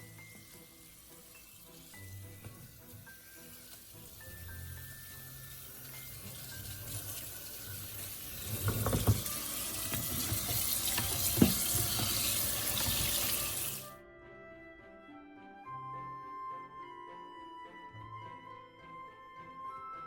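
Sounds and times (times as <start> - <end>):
tap water running into a sink: 0.0 - 13.9.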